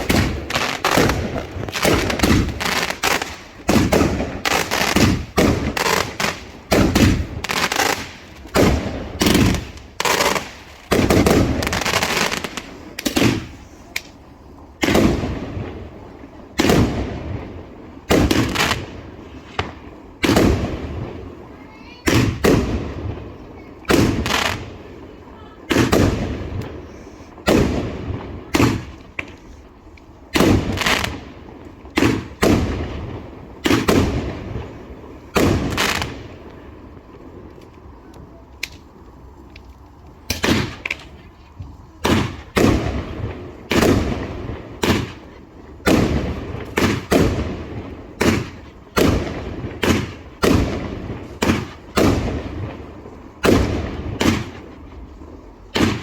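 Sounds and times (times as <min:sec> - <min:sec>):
small firework pops: 0:00.0 - 0:15.4, 0:18.1 - 0:20.8, 0:22.0 - 0:23.2, 0:23.8 - 0:24.8, 0:25.6 - 0:56.0
fireworks bangs: 0:00.0 - 0:56.0.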